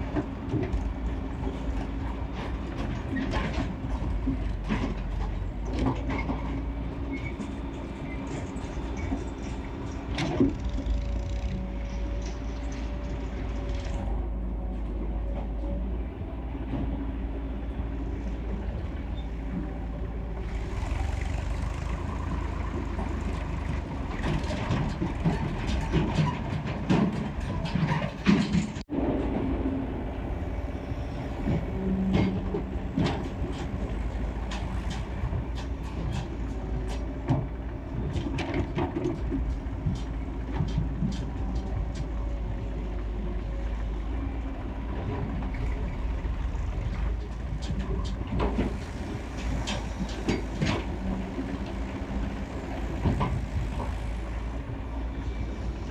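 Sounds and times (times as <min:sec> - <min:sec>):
excavator diesel engine rumbling: 0:00.0 - 0:55.9
metallic clanks and knocks: 0:22.8 - 0:28.9.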